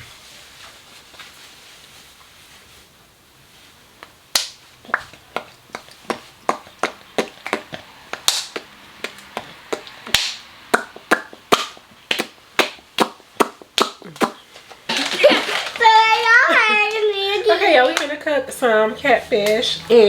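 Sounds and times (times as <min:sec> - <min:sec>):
sharp slaps or taps: 0:04.3 - 0:14.4.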